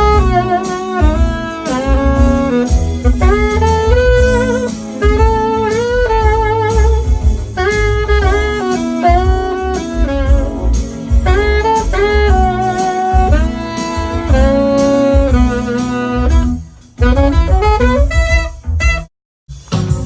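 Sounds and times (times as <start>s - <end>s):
pulsing low beat: 0.0s - 19.1s
saxophones playing jazz: 0.0s - 19.1s.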